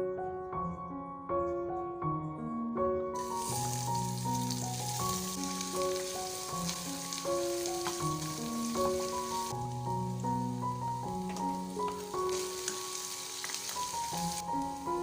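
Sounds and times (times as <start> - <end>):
soft piano music: 0.0 - 15.0
food sizzling in a pan: 3.2 - 15.0.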